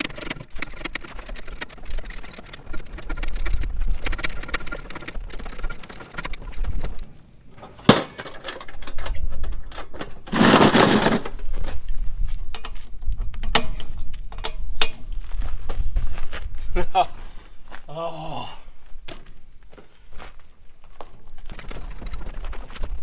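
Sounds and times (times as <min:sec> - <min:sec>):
wind rumble on microphone: 0:01.4 - 0:05.8, 0:11.4 - 0:16.9, 0:21.2 - 0:23.0.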